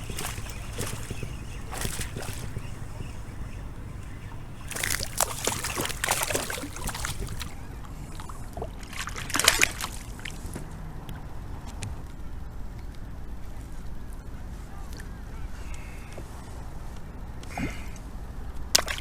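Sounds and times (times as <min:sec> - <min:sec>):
fish thrashing at surface: 0:00.0 - 0:07.5
water splashing and sloshing: 0:00.0 - 0:07.6.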